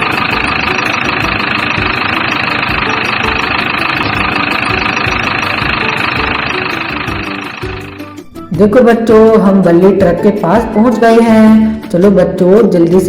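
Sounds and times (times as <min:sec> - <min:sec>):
truck engine driving off: 0:00.0 - 0:08.5.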